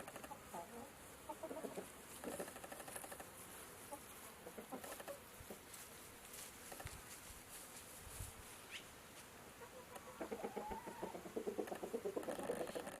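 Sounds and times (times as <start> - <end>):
hens clucking: 0.0 - 5.7, 9.6 - 13.0.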